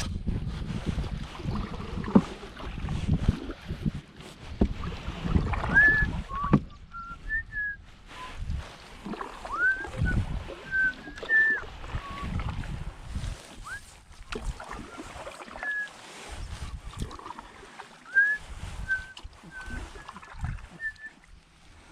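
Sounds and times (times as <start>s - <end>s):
water splashing around canoe: 0.0s - 21.9s
bird whistling: 9.5s - 12.3s, 15.6s - 15.9s, 20.7s - 21.1s.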